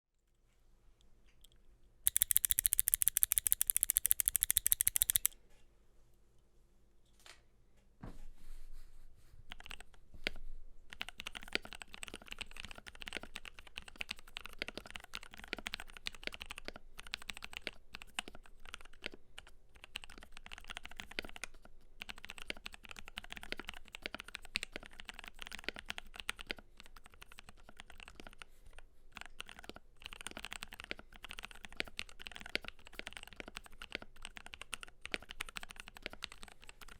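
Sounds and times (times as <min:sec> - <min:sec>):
typing on mechanical keyboard: 0:02.1 - 0:05.4, 0:10.9 - 0:21.4, 0:29.2 - 0:36.9.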